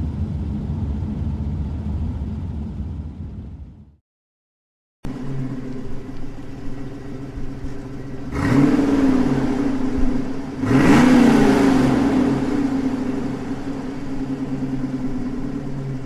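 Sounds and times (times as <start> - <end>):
car engine idling and revving: 0.0 - 4.0, 5.0 - 16.0.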